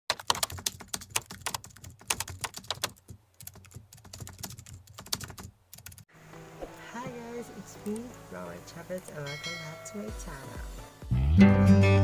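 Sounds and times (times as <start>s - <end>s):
computer keyboard typing: 0.1s - 6.1s.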